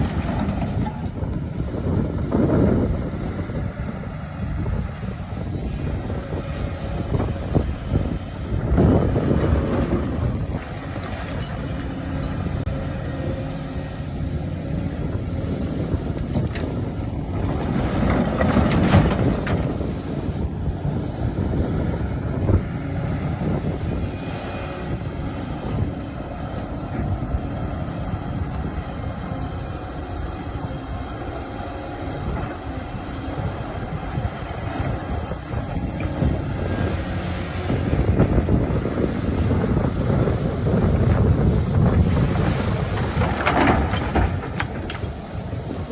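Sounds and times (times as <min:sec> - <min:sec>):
excavator engine under load: 0:00.0 - 0:45.9
wind rushing on microphone: 0:00.0 - 0:45.9.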